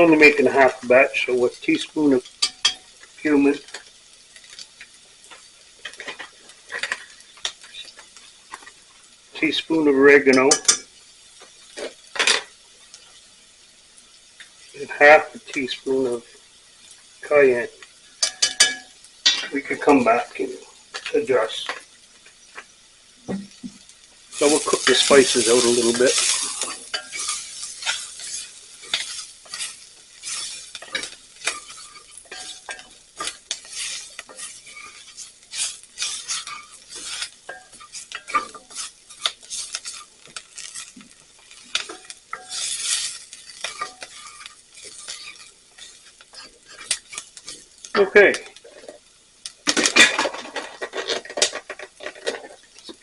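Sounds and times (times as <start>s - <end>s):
light frying sizzle: 0.0s - 53.0s
cookware clatter: 10.3s - 10.9s, 18.2s - 19.5s, 24.4s - 40.9s, 49.7s - 53.0s
utensil scraping a pan: 18.2s - 20.1s, 24.3s - 49.0s, 49.7s - 53.0s.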